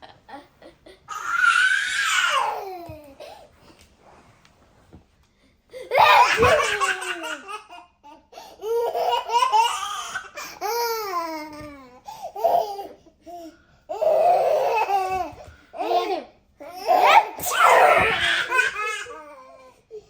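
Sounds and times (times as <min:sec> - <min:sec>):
young child laughing: 0:05.8 - 0:07.7.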